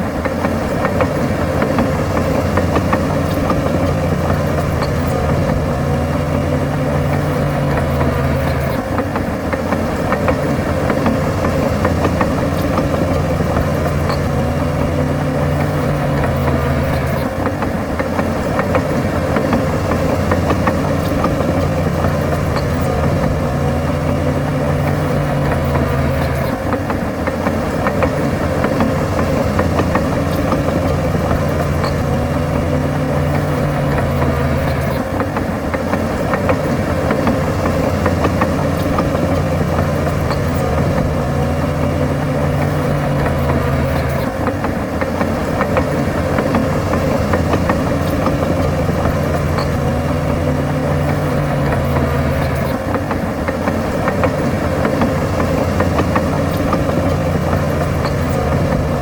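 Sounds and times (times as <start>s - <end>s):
heavy diesel engine running: 0.0s - 59.0s.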